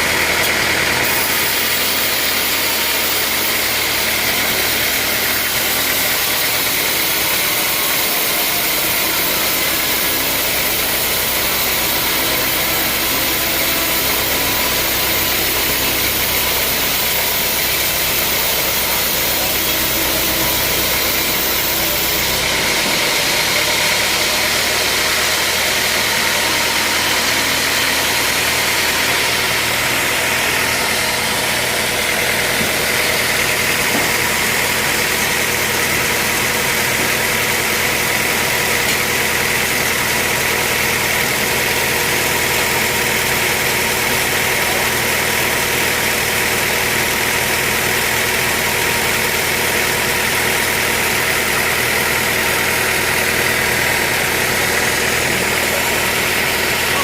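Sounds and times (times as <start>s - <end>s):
sawmill machinery running: 0.0s - 57.0s
low hum: 8.7s - 33.3s.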